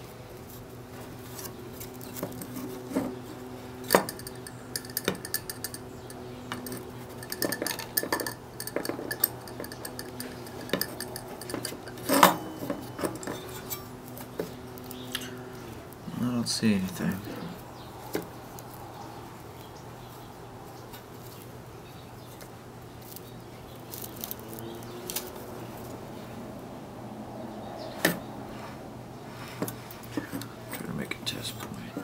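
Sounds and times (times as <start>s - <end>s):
low electrical hum: 0.0s - 32.0s
metal hand tools clicking: 3.8s - 13.9s.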